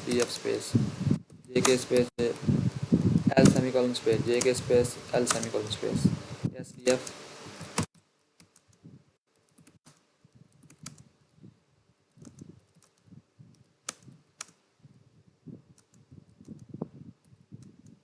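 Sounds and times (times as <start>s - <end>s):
keyboard key clicks: 5.2s - 5.6s.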